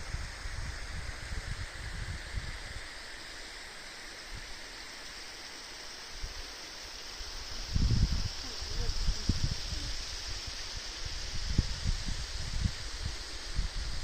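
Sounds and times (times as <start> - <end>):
stream water rushing: 0.1 - 14.0
wind buffeting microphone: 7.6 - 14.0.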